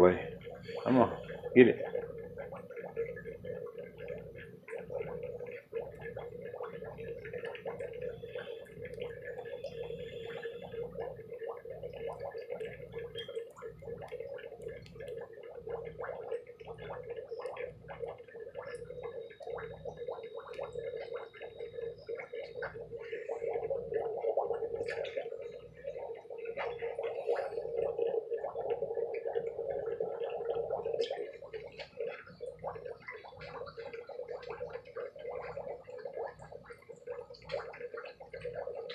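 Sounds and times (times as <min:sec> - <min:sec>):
water gurgling and bubbling: 0:00.0 - 0:38.9
small ticks: 0:00.3 - 0:38.9.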